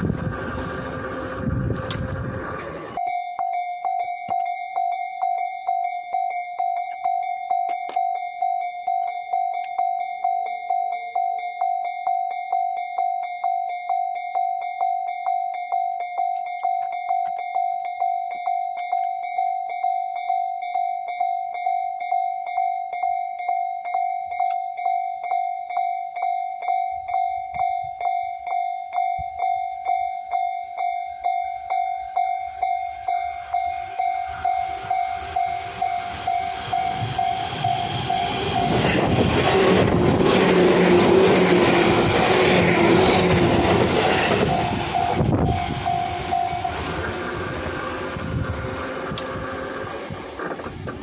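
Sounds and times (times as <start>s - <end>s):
train passing: 0.0s - 7.1s, 27.0s - 51.0s
level-crossing warning bell: 0.0s - 50.6s.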